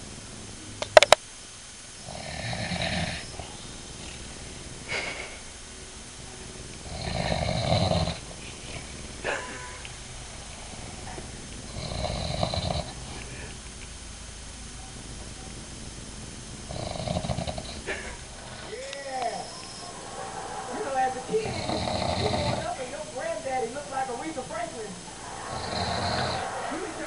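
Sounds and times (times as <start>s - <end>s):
man snoring: 2.0s - 5.4s, 6.8s - 9.5s, 11.7s - 13.6s, 16.7s - 18.6s.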